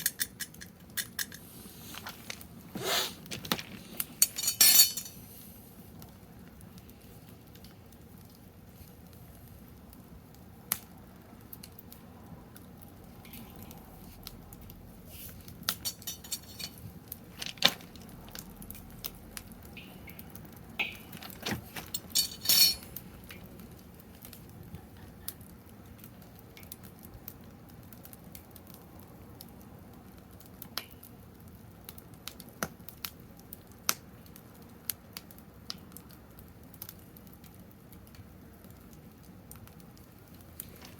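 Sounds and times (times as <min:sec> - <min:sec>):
wood fire crackling and popping: 0:00.0 - 0:40.9.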